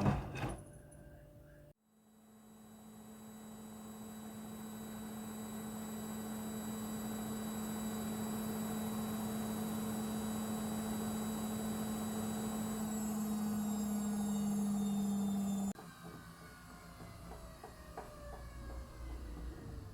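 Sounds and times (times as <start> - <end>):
washing machine humming: 4.5 - 19.9.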